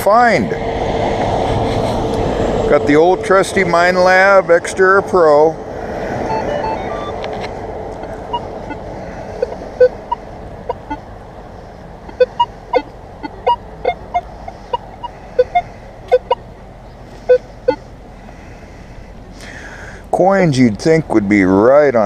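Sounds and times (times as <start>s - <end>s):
metal detector short beeps: 9.4s - 11.0s, 12.1s - 16.4s, 17.3s - 17.8s.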